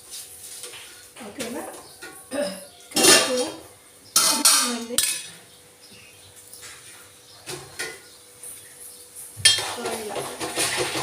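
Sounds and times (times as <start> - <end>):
kitchenware clattering: 0.6 - 5.5, 6.6 - 8.1, 9.4 - 11.0
dishes clinking: 1.4 - 5.5, 7.4 - 8.1, 9.4 - 11.0.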